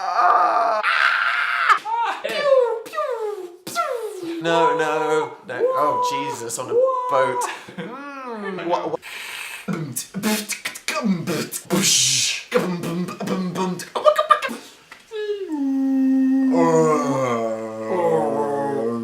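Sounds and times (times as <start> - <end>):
man making mouth noises: 9.0 - 19.0
lower held vocal part: 15.2 - 19.0.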